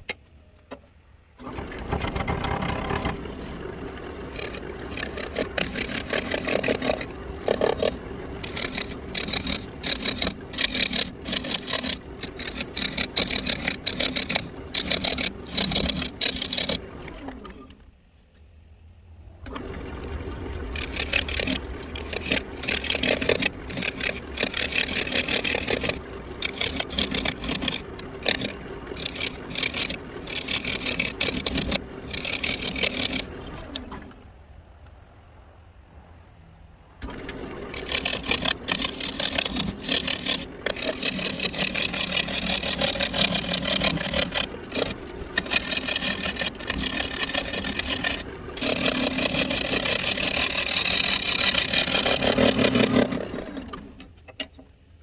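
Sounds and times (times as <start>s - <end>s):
turning tool scraping wood: 1.4s - 17.7s, 19.5s - 34.0s, 37.0s - 53.9s
low lathe hum: 1.4s - 18.0s, 19.2s - 34.5s, 37.0s - 54.2s.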